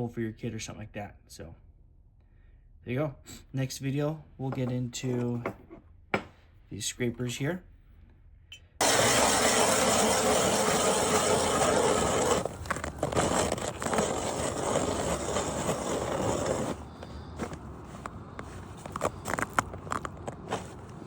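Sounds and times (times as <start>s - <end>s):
ice auger grinding ice: 8.8s - 21.0s.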